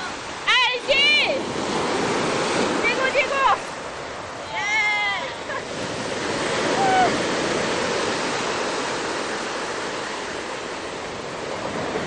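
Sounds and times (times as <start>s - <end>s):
ocean waves breaking: 0.0s - 12.0s.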